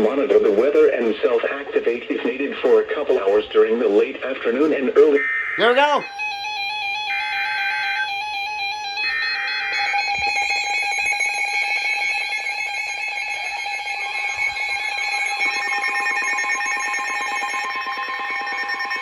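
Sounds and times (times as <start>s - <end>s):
steady alarm tone: 5.1s - 19.0s
buzzing data burst screech: 9.3s - 19.0s.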